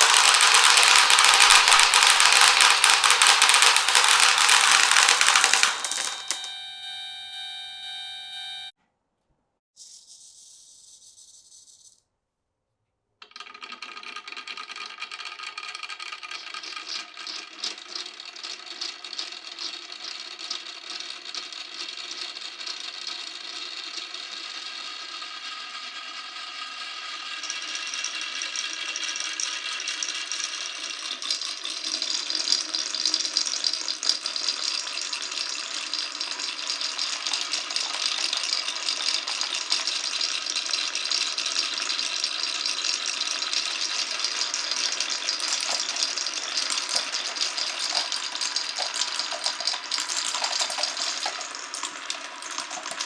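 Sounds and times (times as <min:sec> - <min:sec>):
marbles rattling down a track: 0:00.0 - 0:06.4, 0:13.2 - 0:53.0.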